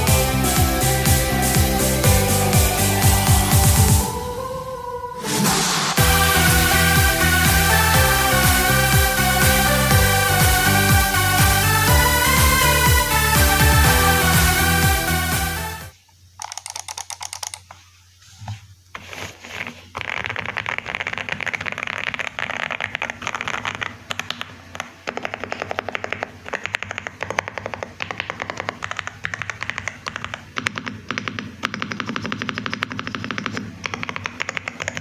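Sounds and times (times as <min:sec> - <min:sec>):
mechanical keyboard typing: 0:16.4 - 0:17.8, 0:20.0 - 0:35.0.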